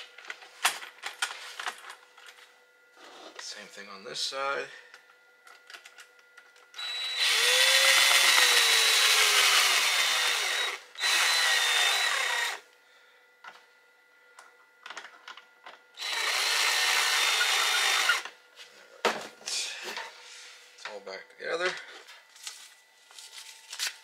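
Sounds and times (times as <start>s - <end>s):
power drill driving screws: 6.8s - 12.6s, 16.0s - 18.3s.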